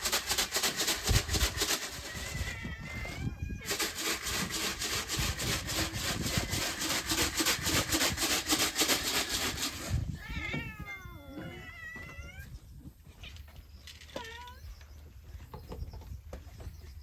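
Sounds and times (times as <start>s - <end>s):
cat meowing: 2.0s - 3.7s, 10.2s - 12.6s.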